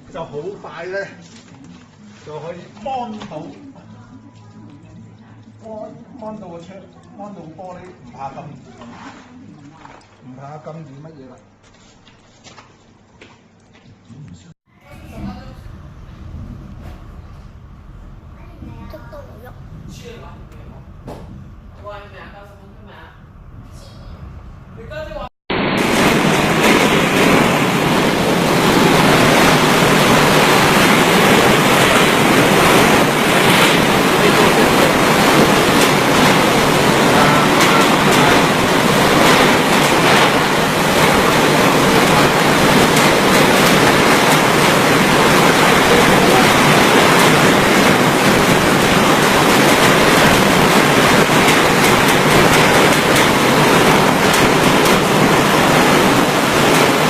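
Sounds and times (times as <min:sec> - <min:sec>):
strong wind blowing: 0:14.9 - 0:57.0.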